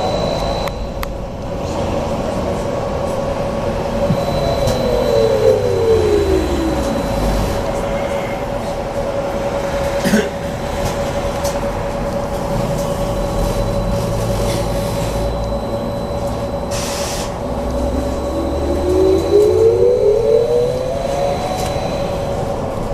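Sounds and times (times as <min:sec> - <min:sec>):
whine gliding down in pitch: 0:00.0 - 0:01.2, 0:03.8 - 0:08.8, 0:13.1 - 0:22.9
low road rumble: 0:00.0 - 0:22.9
electric motor whine: 0:04.0 - 0:07.9, 0:17.4 - 0:22.8.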